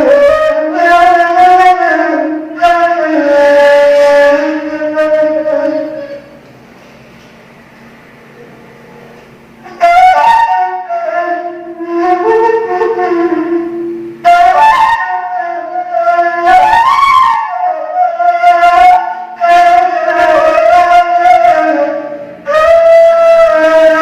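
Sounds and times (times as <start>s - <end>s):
breathy reed flute improvising: 9.6s - 24.0s.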